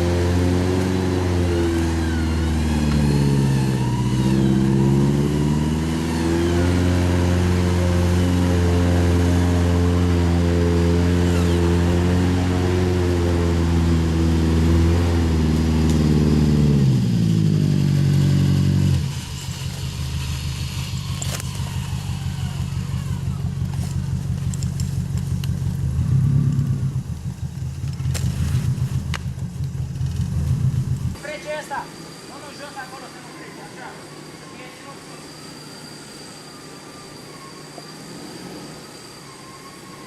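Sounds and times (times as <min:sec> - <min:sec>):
off-road vehicle engine revving: 0:00.0 - 0:31.3.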